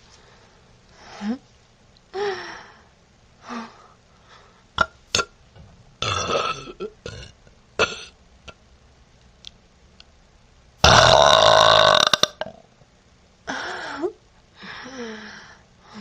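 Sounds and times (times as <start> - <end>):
woman burping: 6.0 - 8.1, 10.8 - 12.6.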